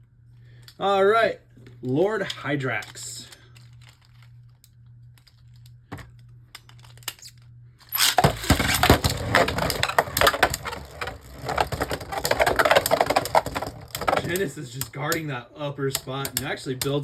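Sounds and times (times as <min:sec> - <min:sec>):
spinning tops clattering in stadium: 0:08.0 - 0:15.3.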